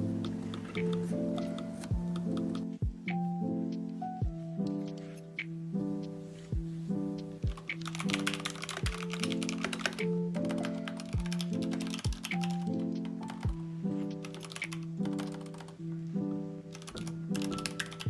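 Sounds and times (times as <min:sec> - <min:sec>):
computer keyboard typing: 0:00.2 - 0:02.7, 0:07.5 - 0:13.6, 0:14.2 - 0:15.8, 0:16.7 - 0:18.0
background music with kick drums: 0:01.9 - 0:07.8, 0:08.8 - 0:09.1, 0:11.2 - 0:11.4, 0:12.0 - 0:12.3, 0:13.4 - 0:13.7.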